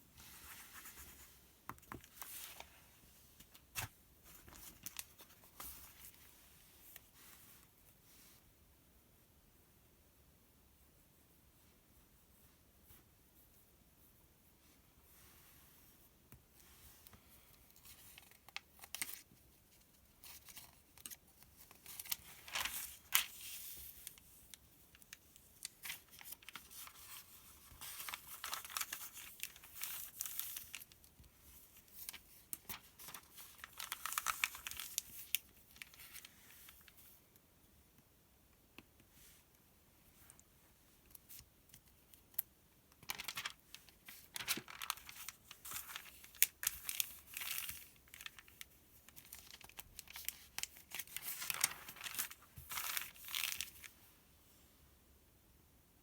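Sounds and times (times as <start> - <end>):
paper pages crinkling and rustling: 0.2 - 7.2, 17.0 - 37.1, 41.1 - 54.0.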